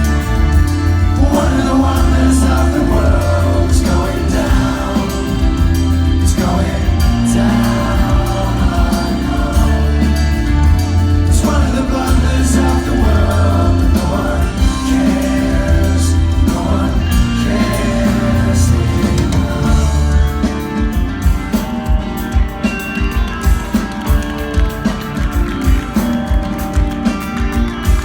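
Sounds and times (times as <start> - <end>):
person singing: 0.0 - 20.8
drum beat: 0.0 - 28.0
live rock band playing: 0.0 - 28.0.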